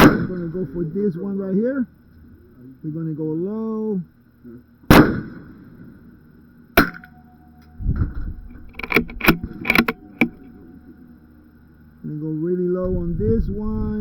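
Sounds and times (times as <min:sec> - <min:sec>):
rifle shot crack: 0:00.0 - 0:00.7, 0:04.9 - 0:05.9, 0:06.8 - 0:07.1
rifle bolt clicking: 0:08.7 - 0:10.4.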